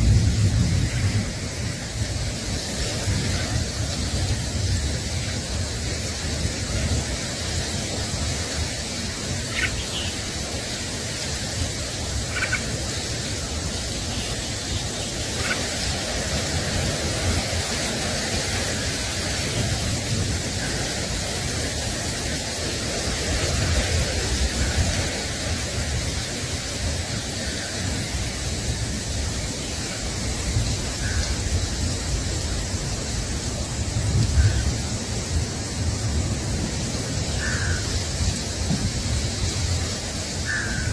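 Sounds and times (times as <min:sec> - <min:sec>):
wind buffeting microphone: 0:00.0 - 0:40.5
steady rushing noise: 0:00.0 - 0:40.9
faint short bird calls: 0:09.5 - 0:10.2, 0:12.3 - 0:12.7.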